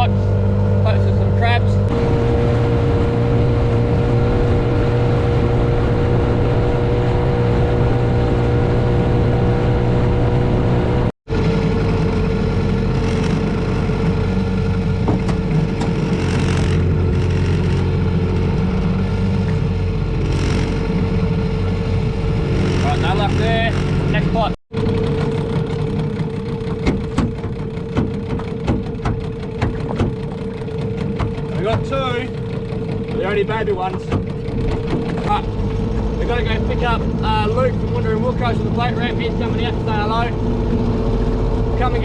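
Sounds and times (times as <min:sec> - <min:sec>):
outboard motor running: 0:00.0 - 0:42.0
water noise: 0:00.0 - 0:42.0.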